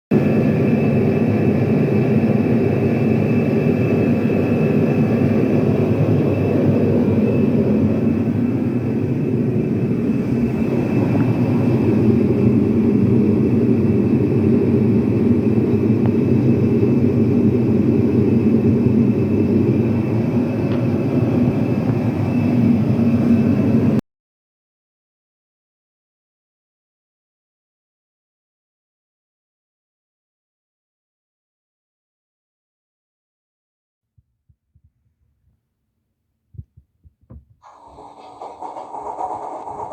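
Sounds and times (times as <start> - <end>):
loud engine-like drone: 0.2 - 24.0, 37.7 - 39.9.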